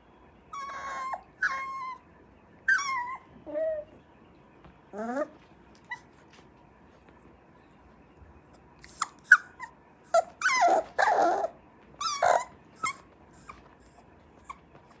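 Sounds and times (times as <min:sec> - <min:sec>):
puppy whining: 0:00.5 - 0:04.1, 0:04.9 - 0:06.3, 0:08.8 - 0:15.0.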